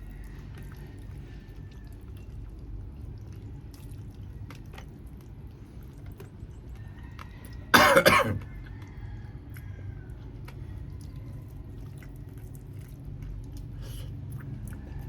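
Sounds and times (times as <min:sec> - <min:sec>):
person coughing: 0:07.8 - 0:08.4.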